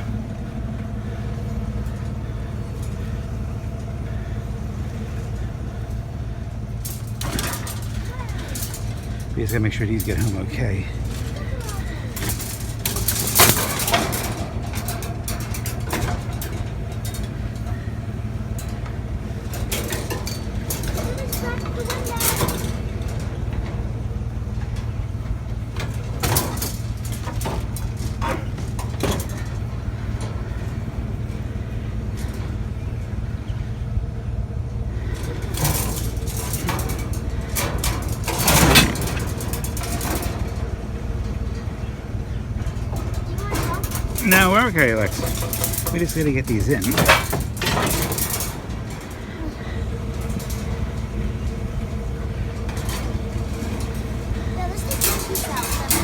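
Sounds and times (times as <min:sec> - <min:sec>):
vehicle engine idling: 0:00.0 - 0:56.0
wire cages rattling and clanking: 0:00.0 - 0:56.0
metal clinks: 0:06.8 - 0:24.0, 0:35.1 - 0:56.0.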